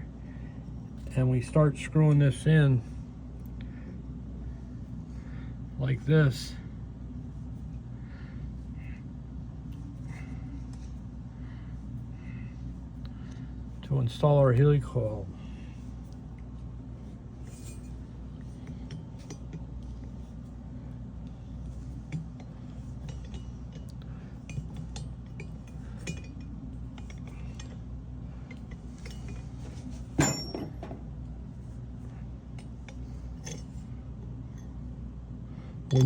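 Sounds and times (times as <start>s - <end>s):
steady low hum: 0.0s - 36.0s
metal tools clicking and clinking: 22.1s - 27.8s, 28.5s - 29.5s, 30.1s - 31.0s
ringing metal clink: 22.1s - 27.8s, 30.2s - 31.0s.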